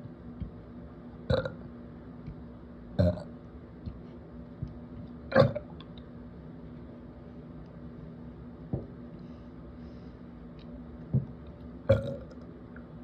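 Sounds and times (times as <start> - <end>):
person burping: 1.3 - 1.6, 3.0 - 3.3, 5.3 - 5.7, 11.9 - 12.3.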